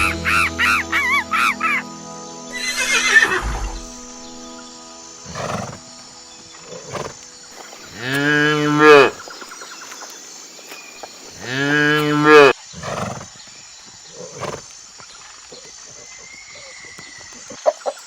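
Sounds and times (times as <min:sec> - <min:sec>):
large farm animal calling: 0:02.5 - 0:03.6, 0:05.2 - 0:09.4, 0:11.4 - 0:13.4.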